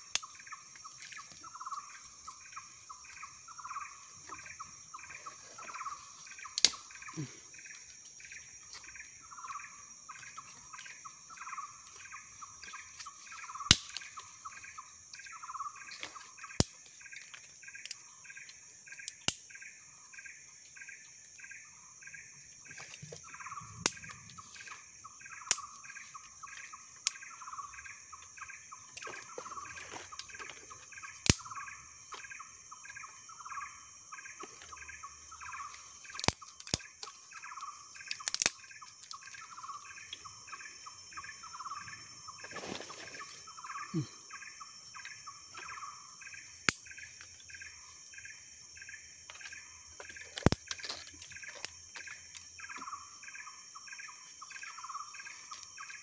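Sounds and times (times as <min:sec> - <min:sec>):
quick rhythmic chirping call: 0:00.0 - 0:16.6, 0:43.4 - 0:50.4
slow rhythmic chirping call: 0:00.0 - 0:42.5, 0:43.2 - 0:56.0
high-pitched insect drone: 0:00.0 - 0:56.0
sharp single clicks: 0:06.6 - 0:06.9, 0:19.0 - 0:19.5.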